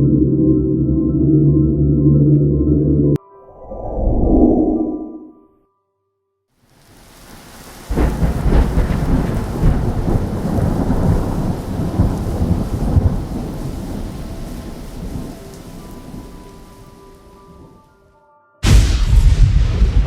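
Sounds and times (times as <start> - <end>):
rain hissing: 6.6 - 17.9
thunder crack and rumble: 7.7 - 16.4, 18.6 - 20.0.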